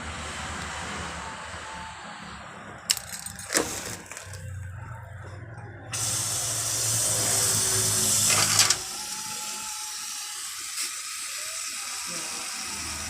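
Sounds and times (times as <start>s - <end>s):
small motor humming: 5.9s - 13.0s
loud hiss: 6.0s - 13.0s.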